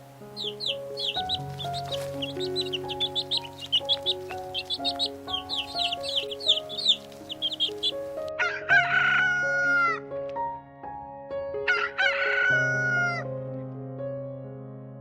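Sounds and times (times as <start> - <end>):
background music: 0.0 - 15.0
quick high chirps: 0.4 - 8.2
rooster crowing: 8.4 - 10.0, 11.7 - 13.2.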